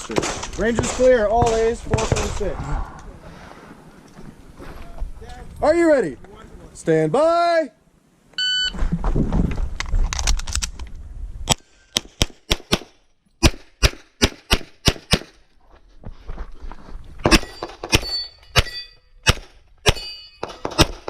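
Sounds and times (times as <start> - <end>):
steel targets ringing: 17.4 - 19.2, 19.9 - 20.7.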